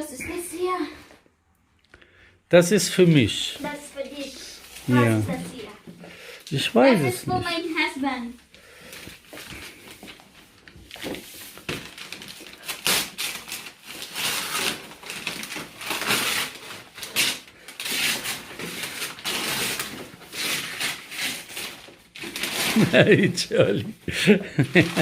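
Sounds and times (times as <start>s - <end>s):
wrapping paper rustling: 3.5s - 5.6s, 8.7s - 25.0s.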